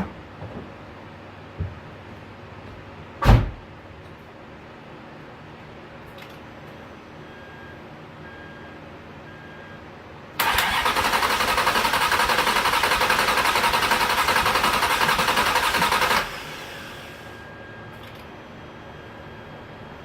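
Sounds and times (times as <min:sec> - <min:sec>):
car engine cranking on starter: 0:10.4 - 0:17.2.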